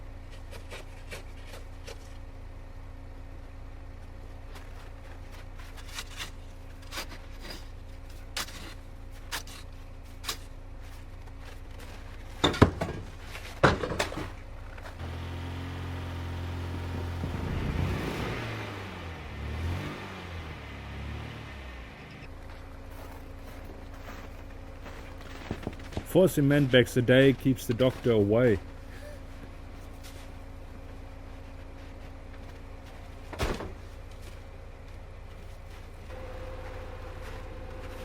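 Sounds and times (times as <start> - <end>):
car engine running and revving: 14.3 - 38.0.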